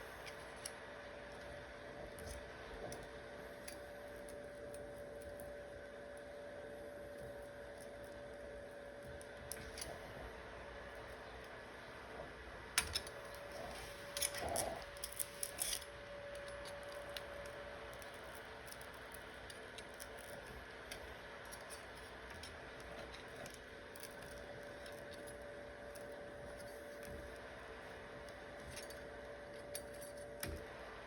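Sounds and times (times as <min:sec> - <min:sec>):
faint steady hum: 0:00.0 - 0:31.0.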